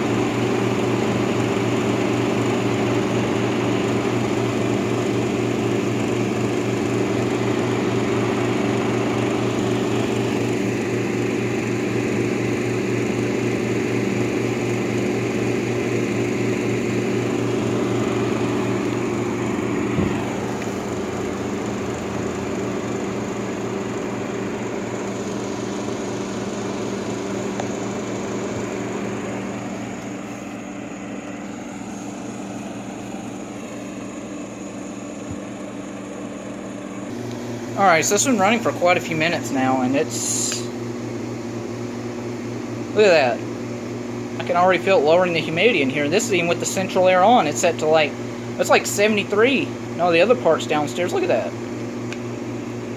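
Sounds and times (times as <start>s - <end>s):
window air conditioner running: 0.0s - 52.9s
air conditioner knock: 19.6s - 21.4s.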